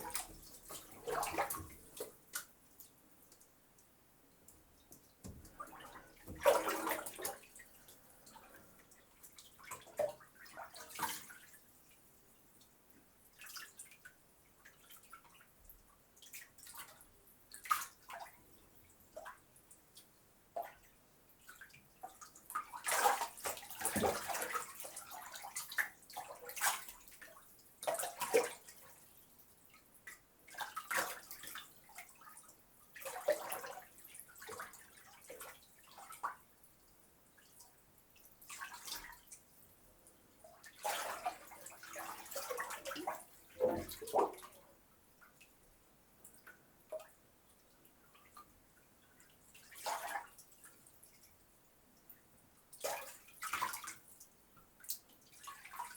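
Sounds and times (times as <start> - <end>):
water sloshing in bathtub: 0.0 - 3.4, 4.8 - 12.0, 13.3 - 18.4, 19.1 - 36.5, 37.4 - 39.5, 40.4 - 45.6, 46.2 - 51.3, 52.7 - 55.9
water drips: 0.0 - 12.0.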